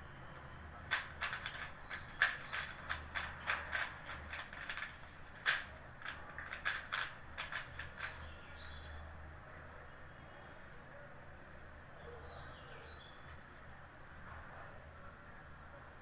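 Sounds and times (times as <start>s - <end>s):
puzzle cube plastic clicks: 0.8s - 8.2s.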